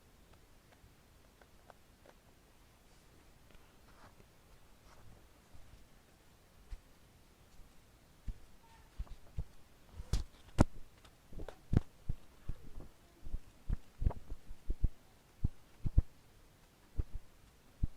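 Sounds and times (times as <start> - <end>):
book pages flipping: 10.0 - 11.9.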